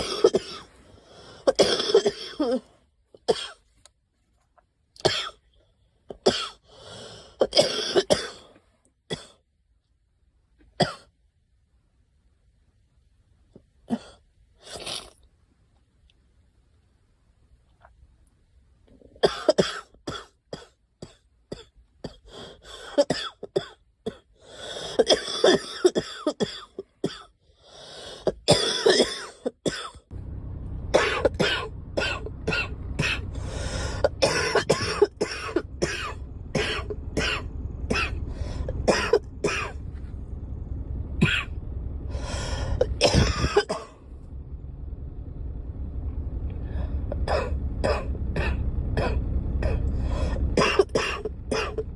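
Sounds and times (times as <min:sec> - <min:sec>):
girl coughing: 0:00.0 - 0:00.7, 0:01.5 - 0:02.6, 0:07.4 - 0:08.4, 0:19.2 - 0:22.2, 0:25.0 - 0:27.3, 0:28.3 - 0:30.0, 0:34.0 - 0:38.2, 0:38.8 - 0:39.8, 0:42.8 - 0:43.9, 0:50.6 - 0:51.8
low rumble: 0:30.1 - 0:51.9.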